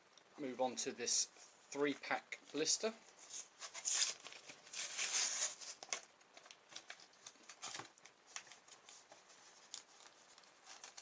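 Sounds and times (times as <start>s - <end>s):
plastic packaging crinkling: 3.3s - 11.0s.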